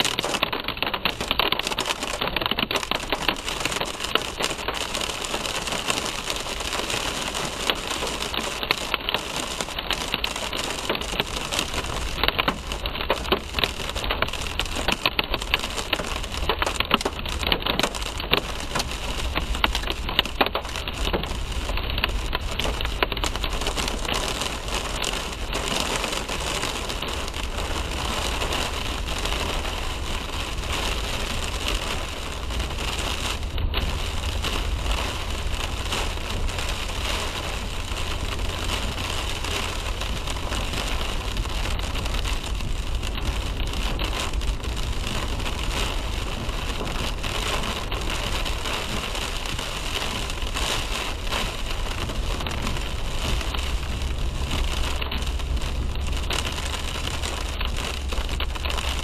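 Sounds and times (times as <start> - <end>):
low road rumble: 0.0 - 59.0
rain pattering on car: 0.0 - 59.0.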